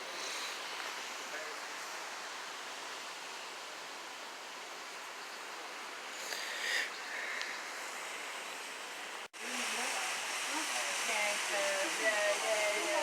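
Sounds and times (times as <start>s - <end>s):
flowing water hissing: 0.0s - 13.0s.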